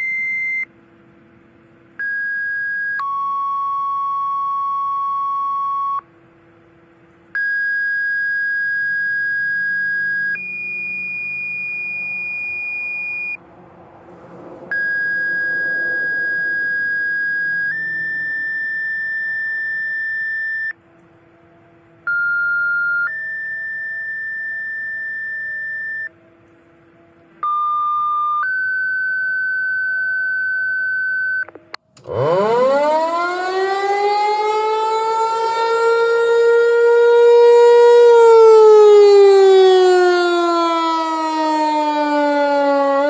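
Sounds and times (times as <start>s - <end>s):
paging tones over radio: 2.0s - 6.0s, 7.4s - 13.4s, 14.7s - 20.7s, 22.1s - 26.1s, 27.4s - 31.6s.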